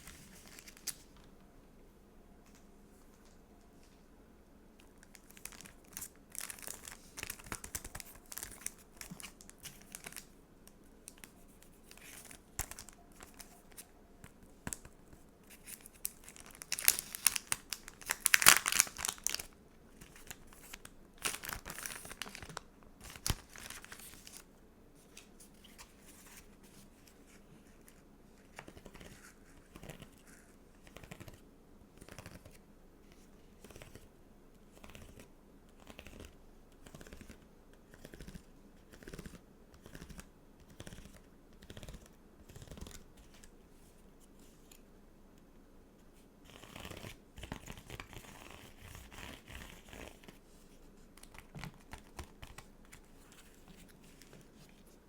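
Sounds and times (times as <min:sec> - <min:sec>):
plastic packaging crinkling and tearing: 0:05.0 - 0:10.3, 0:11.1 - 0:13.9, 0:14.7 - 0:24.5.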